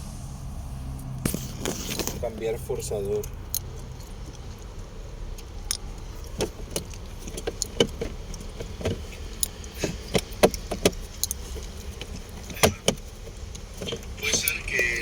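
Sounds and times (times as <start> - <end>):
low steady rumble: 0.0 - 15.0
tools and plastic parts rattling: 5.3 - 14.6.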